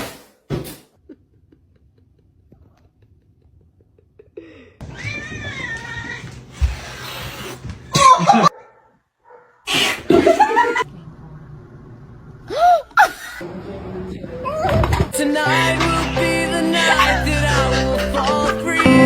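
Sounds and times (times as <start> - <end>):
cat meowing: 4.9 - 6.9.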